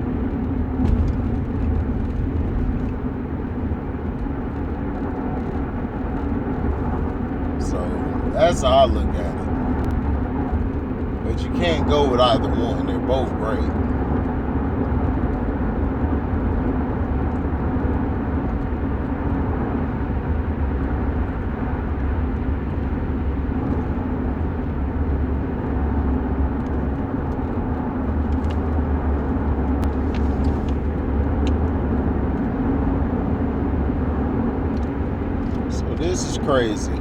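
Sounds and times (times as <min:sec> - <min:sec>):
low vehicle rumble: 0:00.0 - 0:37.0.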